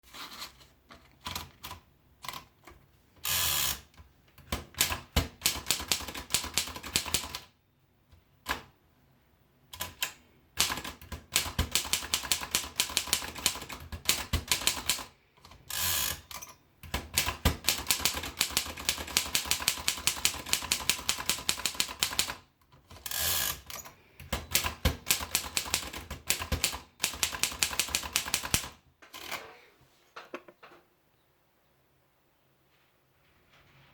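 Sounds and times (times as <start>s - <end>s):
manual typewriter keystrokes: 3.8s - 7.5s, 9.8s - 29.5s.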